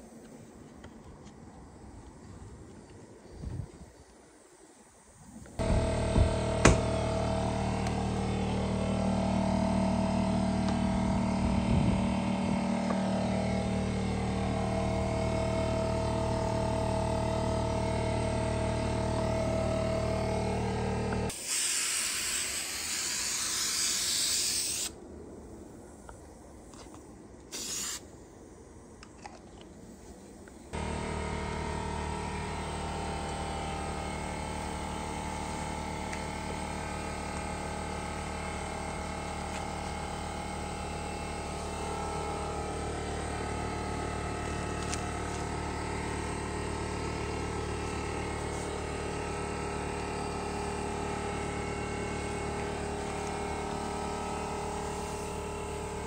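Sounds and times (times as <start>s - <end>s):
motor running: 5.5s - 24.9s, 30.7s - 56.0s
loud hiss: 21.3s - 25.0s, 27.5s - 28.2s.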